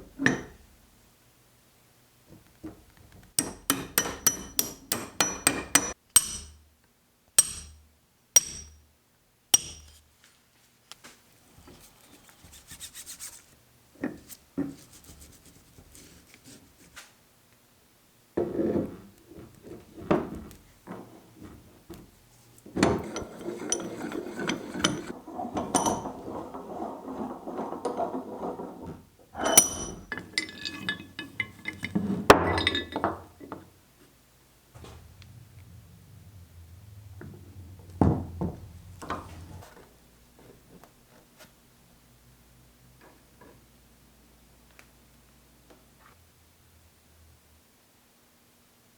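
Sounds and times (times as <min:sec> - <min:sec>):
metal knocks and clinks: 0:03.4 - 0:06.6, 0:22.8 - 0:26.4, 0:29.4 - 0:33.6
metal scraping and rubbing: 0:22.8 - 0:32.2, 0:34.6 - 0:40.7.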